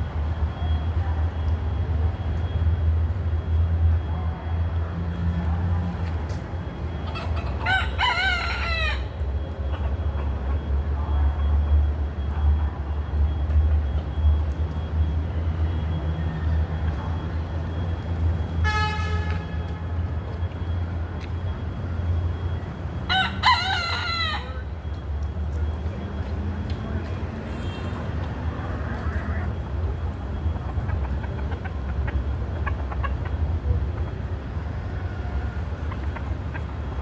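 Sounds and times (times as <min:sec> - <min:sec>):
low rumble of city traffic: 0:00.0 - 0:37.0
rooster crowing: 0:07.1 - 0:09.2, 0:23.1 - 0:24.7.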